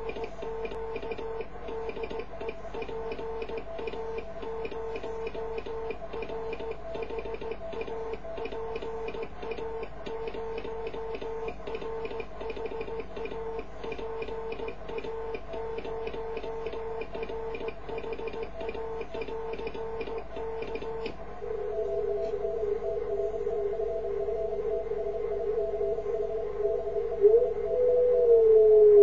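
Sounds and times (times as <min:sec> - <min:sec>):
morse code beeps: 0:00.0 - 0:21.2
telegraph key clicking: 0:00.0 - 0:21.2.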